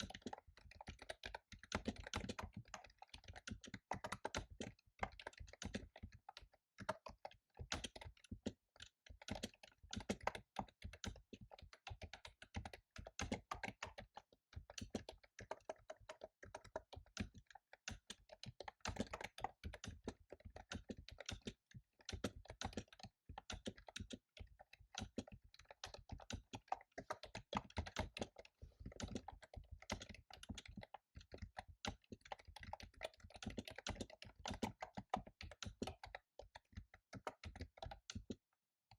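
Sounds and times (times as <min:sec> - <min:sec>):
computer keyboard typing: 0:00.0 - 0:38.9.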